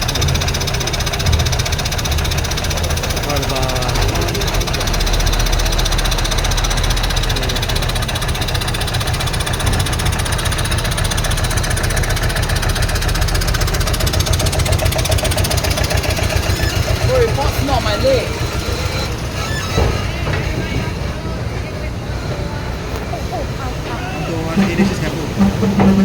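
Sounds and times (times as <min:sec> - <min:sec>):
large engine clattering: 0:00.0 - 0:26.0.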